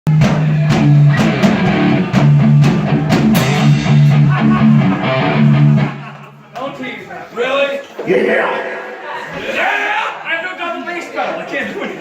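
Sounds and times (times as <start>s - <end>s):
distorted electric guitars: 0.2s - 6.1s.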